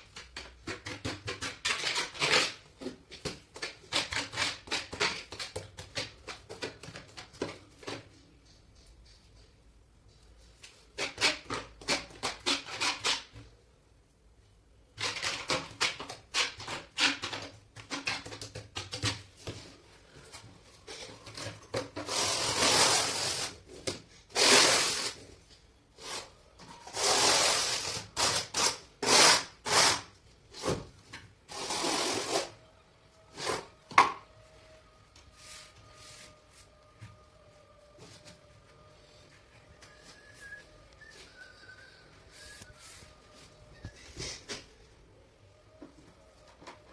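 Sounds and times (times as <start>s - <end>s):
hand scraping and rubbing: 34.8s - 44.8s.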